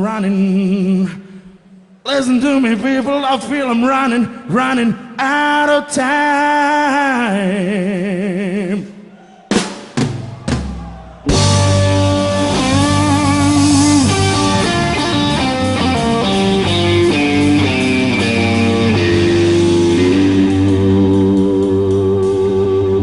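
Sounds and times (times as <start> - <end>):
electric blues band: 11.3 - 23.0
electric guitar lead line: 11.3 - 23.0.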